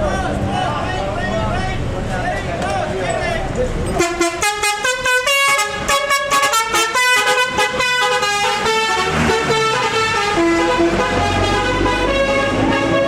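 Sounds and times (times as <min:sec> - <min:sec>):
low engine rumble: 0:00.0 - 0:06.1
bus horn playing a melody: 0:04.0 - 0:13.0.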